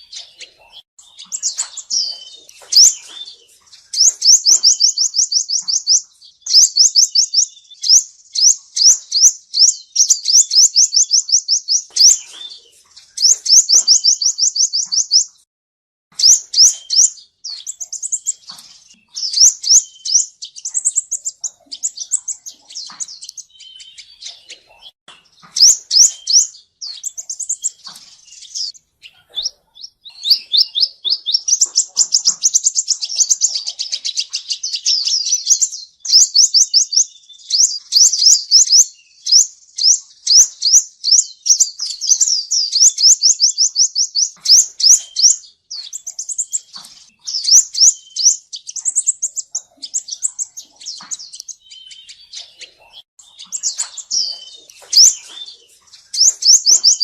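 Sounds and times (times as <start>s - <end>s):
bird chips: 0.0s - 15.4s, 16.1s - 57.0s
bird singing high trills: 0.0s - 15.4s, 16.2s - 57.0s.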